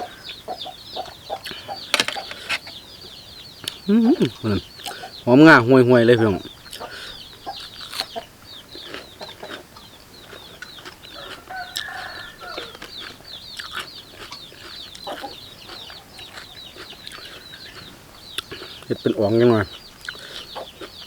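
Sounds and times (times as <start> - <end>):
birds chirping: 0.0 - 21.0
chickens clucking: 0.0 - 21.0
food crunching clicks: 1.4 - 2.5, 8.8 - 18.7.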